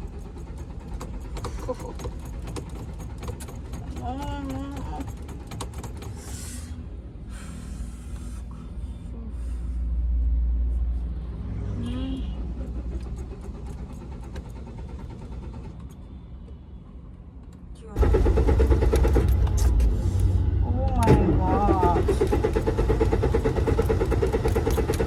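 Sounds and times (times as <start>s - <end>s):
car engine failing to start: 0.0s - 8.3s, 12.2s - 16.6s, 18.0s - 25.0s.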